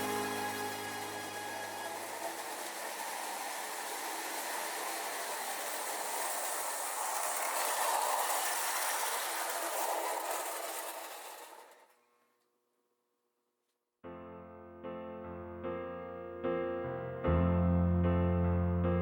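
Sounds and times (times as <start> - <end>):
toy train rattling on track: 0.0 - 12.1.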